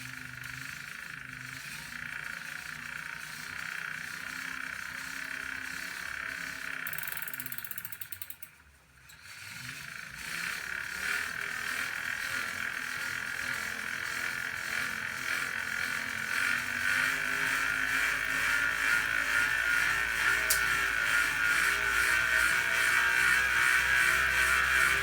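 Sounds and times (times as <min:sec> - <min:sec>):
bike trainer high-pitched whine: 0:10.3 - 0:25.0.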